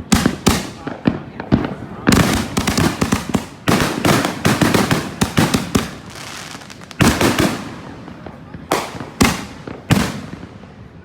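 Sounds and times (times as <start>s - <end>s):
fireworks bangs and crackles: 0.0s - 11.0s.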